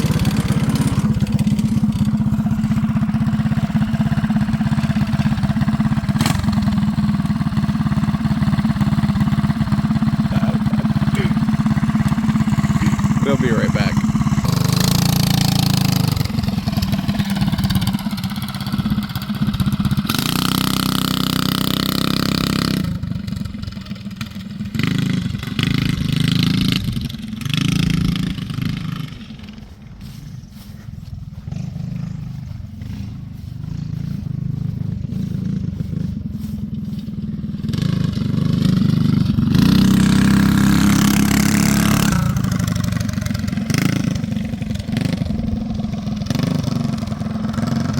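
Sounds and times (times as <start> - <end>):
small gas engine revving: 0.0 - 47.9.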